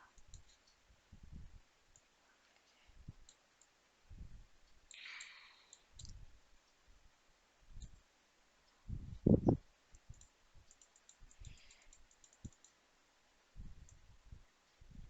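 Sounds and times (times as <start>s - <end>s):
computer mouse clicks: 0.0s - 0.8s, 1.9s - 3.8s, 4.9s - 6.2s, 7.8s - 8.0s, 9.4s - 12.8s
soft low thumps: 0.0s - 1.6s, 8.8s - 10.2s.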